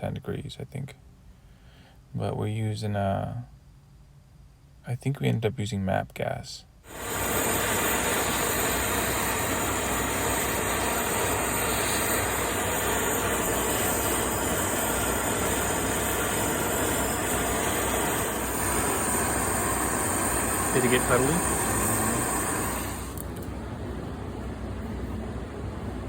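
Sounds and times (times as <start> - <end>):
torch flame hissing: 6.9 - 26.0.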